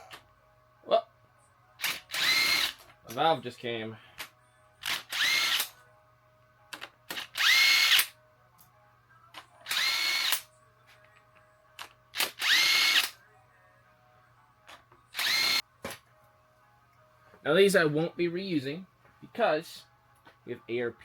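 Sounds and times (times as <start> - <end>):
cordless impact wrench whine: 1.8 - 2.8, 4.8 - 5.7, 7.1 - 8.1, 9.7 - 10.4, 12.2 - 13.1, 15.2 - 15.6.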